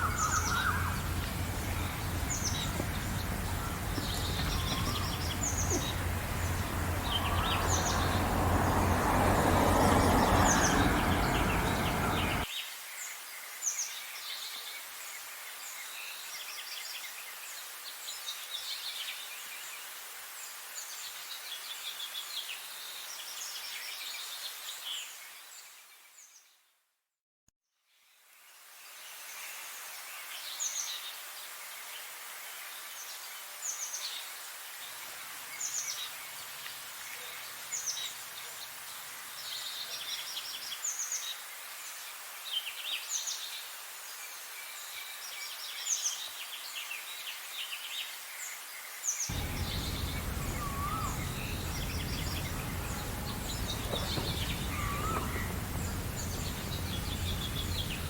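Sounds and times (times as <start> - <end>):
background hiss: 0.0 - 12.4, 49.3 - 58.0
low whistled gliding bird calls: 0.0 - 12.4, 49.3 - 58.0
birds singing and chirping: 0.0 - 12.5, 49.3 - 58.0.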